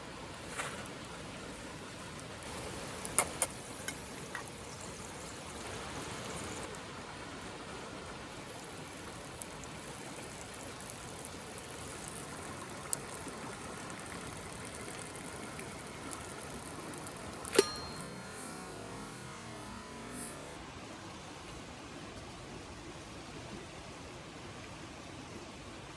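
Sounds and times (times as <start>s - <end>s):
cooking hiss over wood fire: 0.0s - 20.6s
fire crackles: 0.0s - 20.6s
sharp metallic clink: 17.5s - 20.5s.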